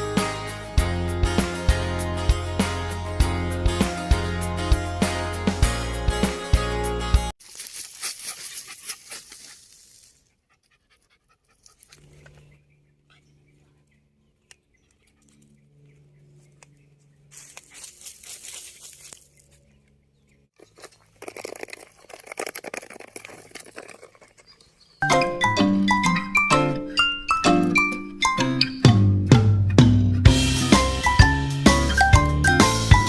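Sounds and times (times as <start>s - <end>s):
crunching and rustling: 7.4s - 10.4s, 16.4s - 19.8s, 20.6s - 25.0s
dog panting: 8.2s - 9.7s, 10.3s - 12.4s.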